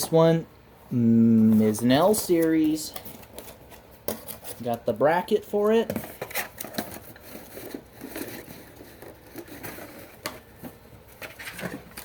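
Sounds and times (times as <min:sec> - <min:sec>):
plastic parts clicking and knocking: 0:05.8 - 0:12.0.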